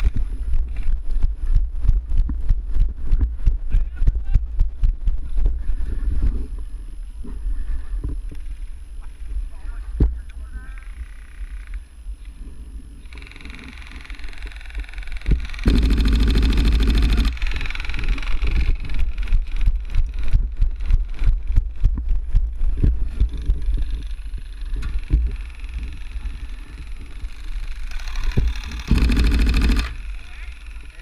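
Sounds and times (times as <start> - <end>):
airsoft gun full-auto burst: 13.1 - 20.0, 23.6 - 31.0
sharp knocks and clatter: 28.2 - 30.0.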